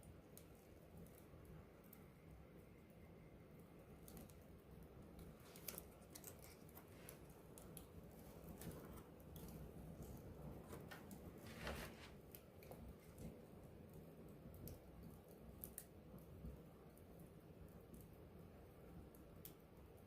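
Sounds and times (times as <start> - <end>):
campfire crackling: 0.0 - 20.0
burning wood popping: 3.9 - 16.4.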